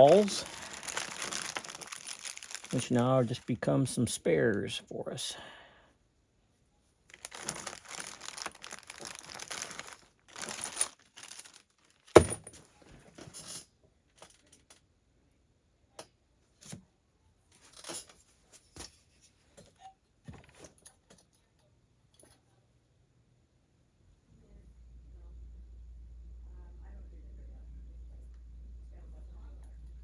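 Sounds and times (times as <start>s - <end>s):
bag crinkling and rustling: 0.0s - 3.6s, 7.1s - 12.6s.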